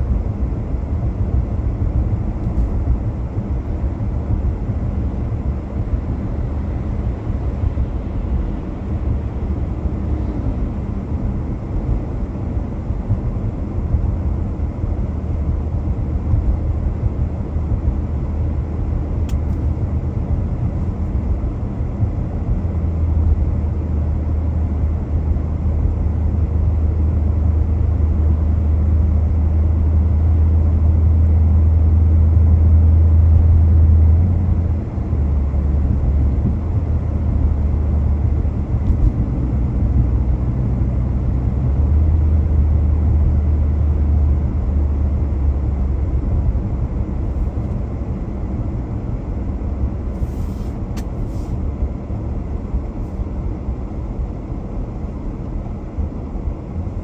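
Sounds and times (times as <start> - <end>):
car road and engine rumble: 0.0 - 57.0
faint click: 19.3 - 19.7, 51.0 - 51.4.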